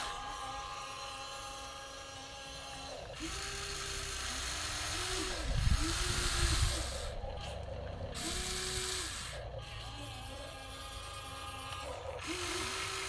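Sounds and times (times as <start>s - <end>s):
electric motors whining: 0.0s - 13.0s.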